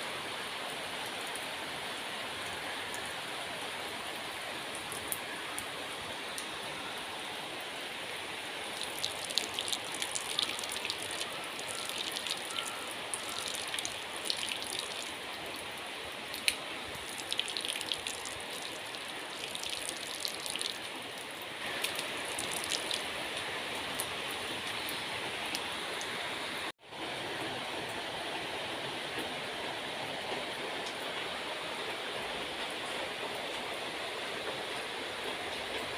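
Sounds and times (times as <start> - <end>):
rain falling: 0.0 - 35.9
close water drips: 8.6 - 15.6, 21.7 - 23.0.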